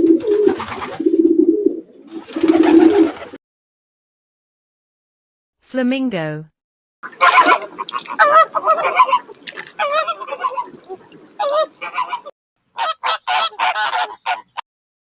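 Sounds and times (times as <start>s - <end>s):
flamingos calling: 7.0s - 14.6s.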